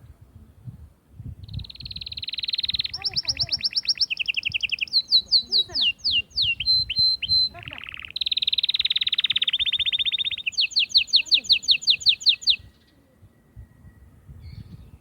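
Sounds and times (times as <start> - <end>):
canary singing trills: 1.4 - 13.1.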